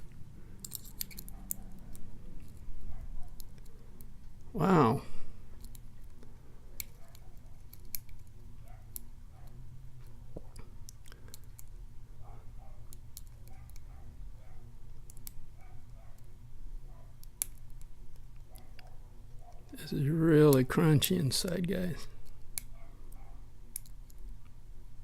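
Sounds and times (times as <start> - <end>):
small lock pin clicks: 23.7 - 24.2.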